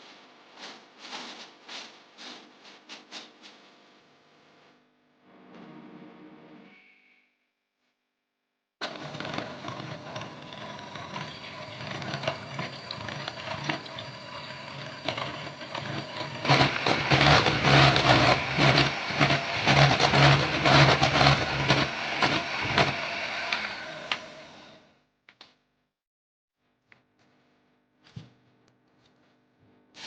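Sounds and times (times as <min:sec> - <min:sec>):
rattling and scraping: 0:08.8 - 0:23.7
kitchen mixer motor humming: 0:08.8 - 0:24.8.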